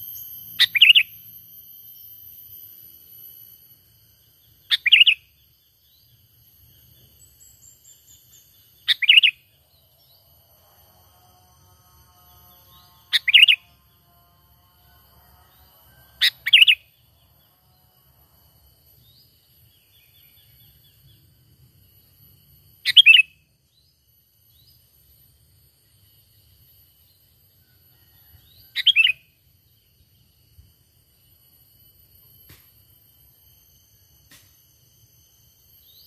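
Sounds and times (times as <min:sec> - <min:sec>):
faint bird chirps: 0:00.0 - 0:10.2, 0:12.3 - 0:14.0, 0:18.8 - 0:32.4.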